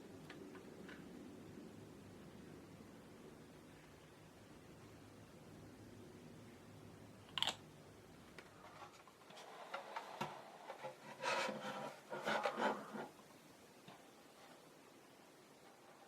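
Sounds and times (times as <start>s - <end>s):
plastic parts being sanded: 9.3s - 13.1s.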